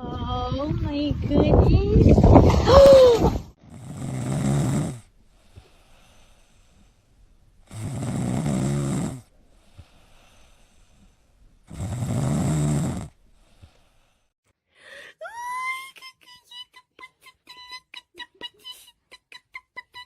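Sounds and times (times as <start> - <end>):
dog snoring: 3.7 - 5.1, 7.7 - 10.4, 11.7 - 13.6.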